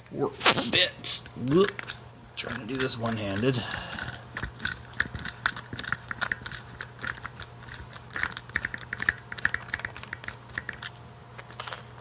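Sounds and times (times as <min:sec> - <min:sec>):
metal and plastic scraping: 0:01.5 - 0:10.9.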